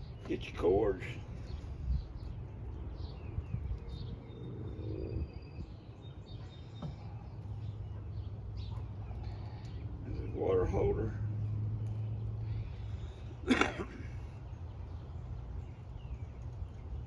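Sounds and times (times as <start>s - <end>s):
small birds chirping: 0.0s - 17.0s
steady low rumble: 0.0s - 17.0s.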